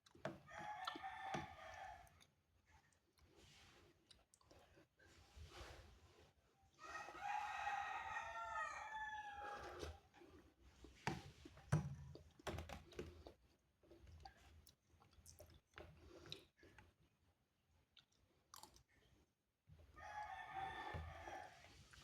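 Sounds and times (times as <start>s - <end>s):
rooster crowing: 6.8s - 9.7s, 20.0s - 21.6s.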